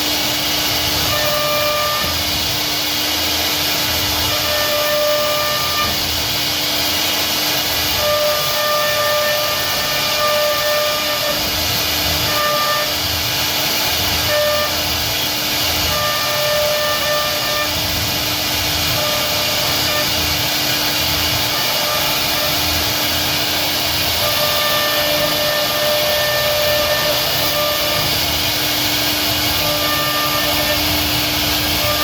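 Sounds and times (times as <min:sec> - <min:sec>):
wood router hissing and humming: 0:00.0 - 0:32.0
high whining tones: 0:07.6 - 0:32.0.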